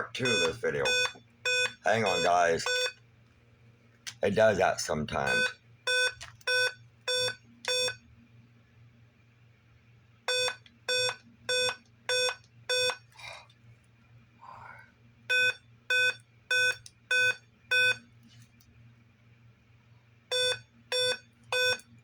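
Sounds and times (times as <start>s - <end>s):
laptop error beeps: 0.0s - 3.0s, 5.2s - 8.0s, 10.3s - 13.0s, 15.3s - 18.0s, 20.3s - 21.8s.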